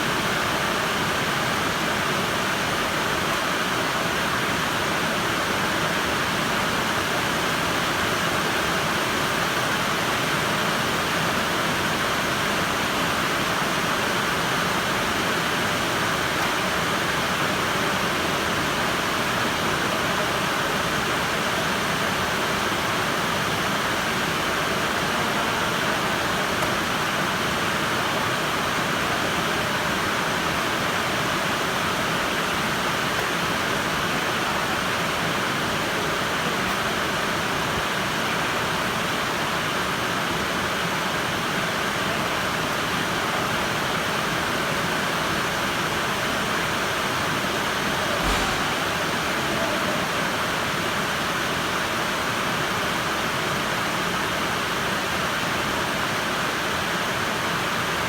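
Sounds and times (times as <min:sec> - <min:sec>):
steady rain: 0:00.0 - 0:58.0
soft thump: 0:48.1 - 0:49.8.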